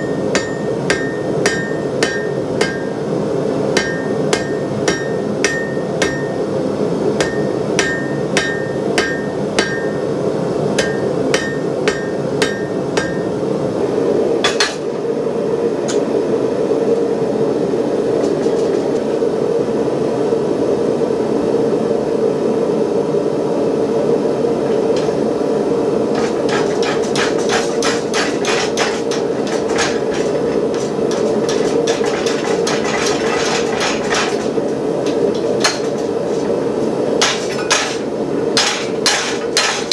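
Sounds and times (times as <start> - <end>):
hammer ringing on anvil: 0.0 - 13.5
gas forge burner roar: 0.0 - 15.5, 24.6 - 39.9.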